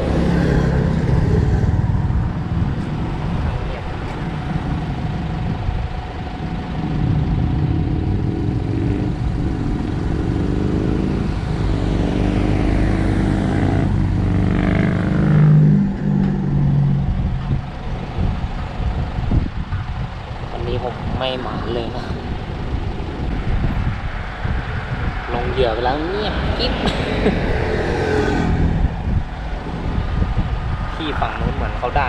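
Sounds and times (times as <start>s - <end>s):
steady traffic: 0.0s - 32.0s
vehicle engine passing: 0.0s - 32.0s
wind noise: 0.0s - 32.0s.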